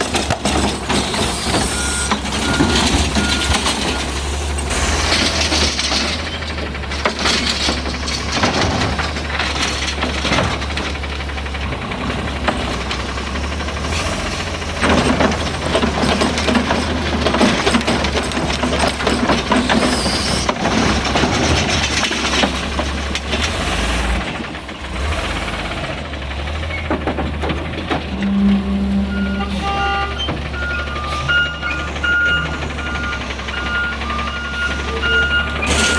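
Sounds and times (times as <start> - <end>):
clattering and banging of carts: 0.0 - 35.9
garbage truck engine running: 0.0 - 35.9.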